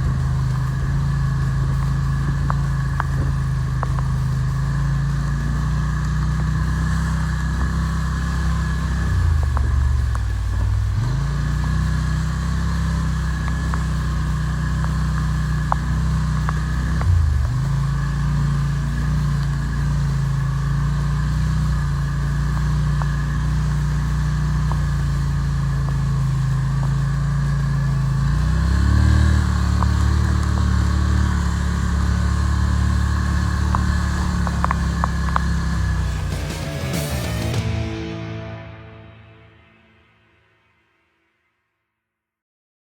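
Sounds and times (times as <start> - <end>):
quad bike engine running: 0.0 - 39.6.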